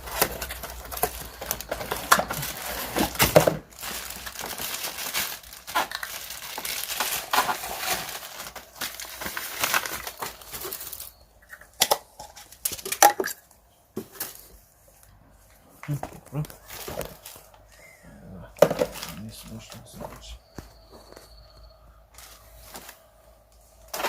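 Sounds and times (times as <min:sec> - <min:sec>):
plastic packaging crinkling: 0:00.0 - 0:13.4, 0:15.8 - 0:18.0, 0:18.6 - 0:24.0.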